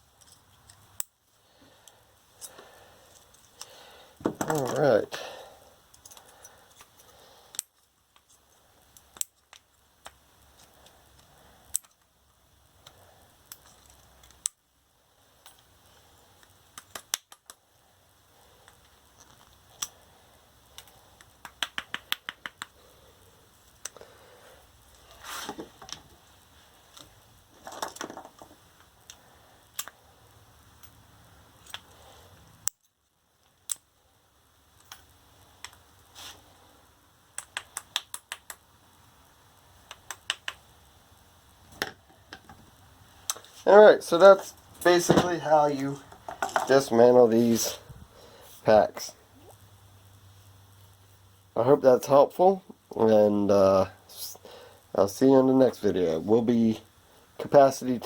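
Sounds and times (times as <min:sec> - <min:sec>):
hand tools clicking and scraping: 0:43.3 - 0:46.9.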